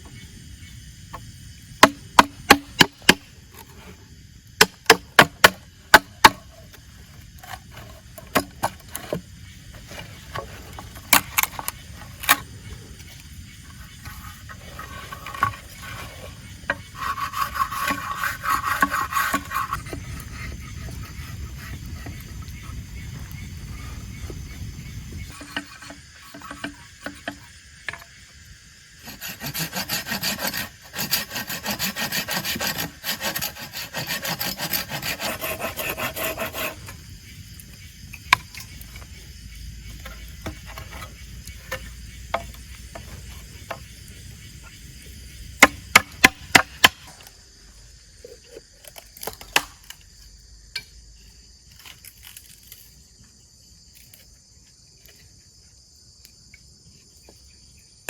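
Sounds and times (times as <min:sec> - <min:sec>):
insects chirring: 0:00.0 - 0:58.0
hand sawing wood: 0:14.0 - 0:22.2, 0:29.0 - 0:37.0.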